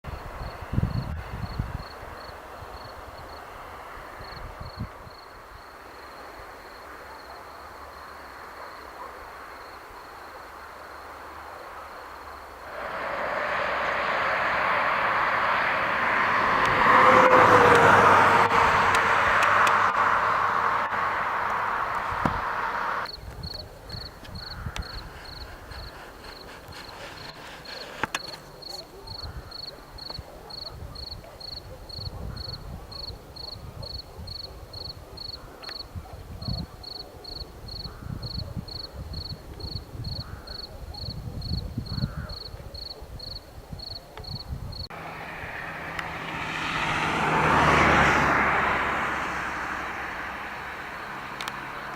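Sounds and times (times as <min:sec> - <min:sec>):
cricket chirping: 0:00.4 - 0:35.9, 0:36.5 - 0:44.9
jet passing on landing: 0:12.7 - 0:23.2, 0:23.9 - 0:28.7, 0:44.9 - 0:51.9.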